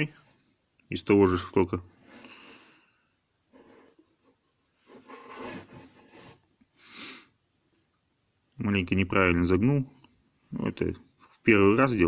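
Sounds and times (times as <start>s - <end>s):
steel chisel scraping wood: 4.9s - 6.4s.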